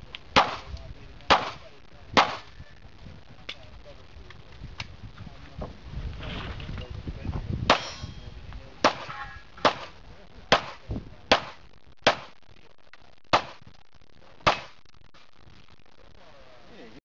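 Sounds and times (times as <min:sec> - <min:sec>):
pistol shots: 0:00.4 - 0:00.7, 0:02.2 - 0:02.5, 0:08.8 - 0:12.4, 0:13.3 - 0:13.6, 0:14.4 - 0:14.8.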